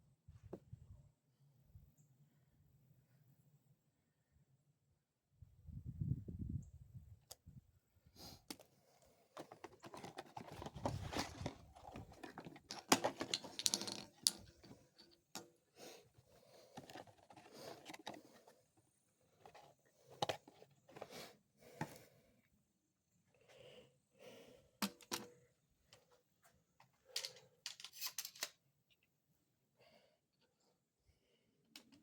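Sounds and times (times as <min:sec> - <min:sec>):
handling shotgun shells: 0:09.4 - 0:15.6, 0:16.6 - 0:18.3, 0:24.8 - 0:25.4, 0:27.0 - 0:28.6.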